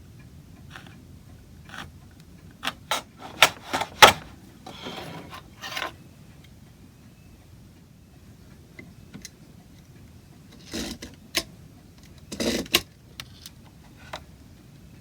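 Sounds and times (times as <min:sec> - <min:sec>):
tool scraping: 0:00.7 - 0:01.0, 0:02.6 - 0:05.9
hand tools knocking and clicking: 0:02.6 - 0:04.9.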